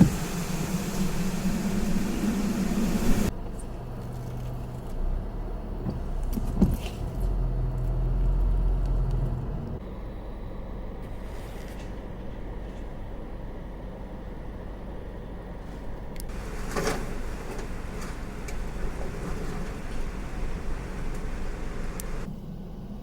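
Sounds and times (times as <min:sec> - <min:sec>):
wind and heavy rain: 0:00.0 - 0:03.3, 0:16.3 - 0:22.3
vehicle engine hum: 0:00.0 - 0:23.0.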